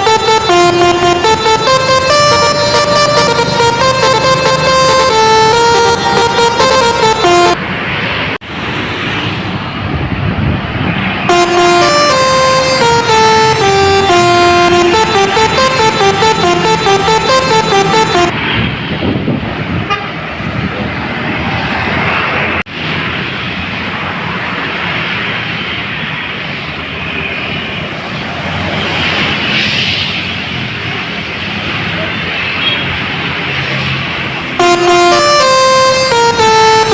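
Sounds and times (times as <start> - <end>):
bus musical horn tune: 0.0 - 7.6, 11.3 - 18.4, 19.9 - 20.1, 34.6 - 36.9
engine roar: 0.0 - 25.9, 33.1 - 36.9.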